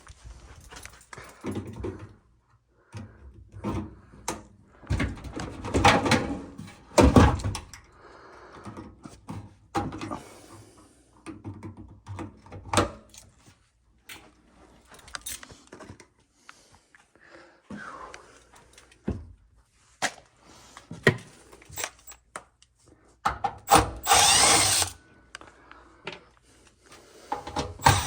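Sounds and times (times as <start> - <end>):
objects knocking and rattling: 4.9 - 7.7.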